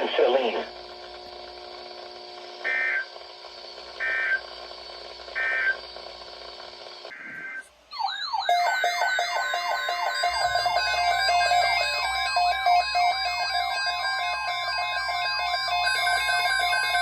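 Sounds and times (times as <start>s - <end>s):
steady radio hum: 0.0s - 1.2s, 10.4s - 13.3s
warbling electronic alert tone: 7.1s - 17.0s
screechy digital data bursts: 8.0s - 17.0s.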